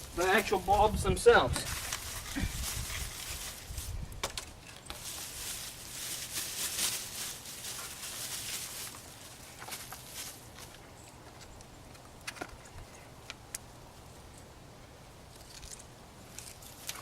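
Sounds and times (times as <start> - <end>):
packaging rustling: 1.6 - 10.7.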